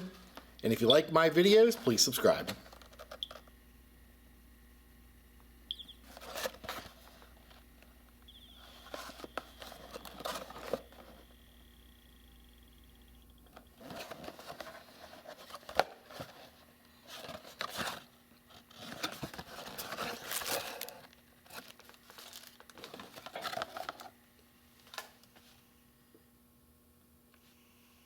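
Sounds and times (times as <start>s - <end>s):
crinkling handling noise: 0.0s - 3.6s, 5.8s - 11.5s, 13.4s - 25.6s.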